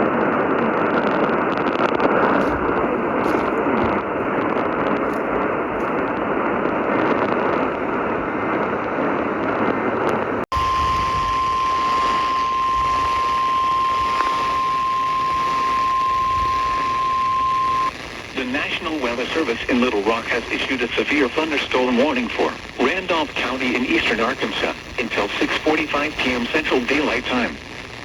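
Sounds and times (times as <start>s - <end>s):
radio hiss and static: 0.0s - 28.0s
steady alarm tone: 10.5s - 17.9s.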